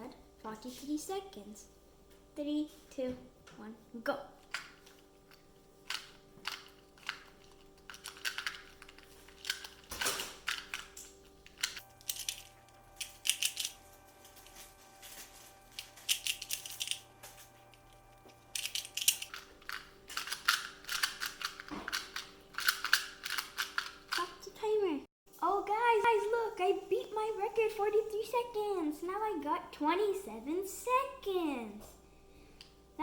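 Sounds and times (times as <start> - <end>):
faint steady hum: 0.0 - 33.0
puzzle cube plastic clicking: 5.9 - 12.4, 18.6 - 24.2.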